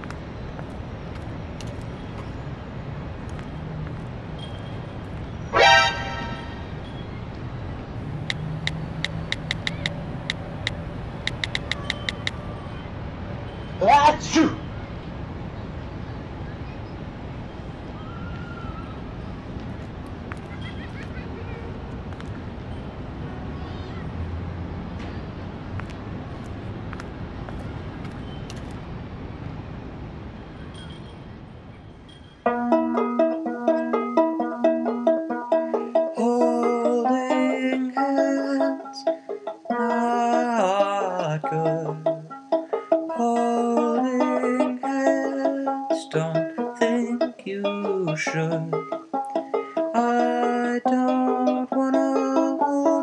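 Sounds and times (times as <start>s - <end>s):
distant traffic: 0.0s - 53.0s
low rumble of passing vehicles: 0.0s - 53.0s
faint clicks and ticks: 8.1s - 12.4s.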